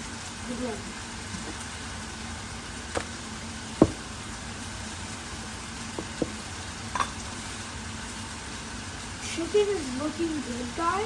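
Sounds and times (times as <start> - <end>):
chicken sizzling in a pan: 0.0 - 11.0
utensil knocking against pan: 3.8 - 4.1, 6.0 - 6.4.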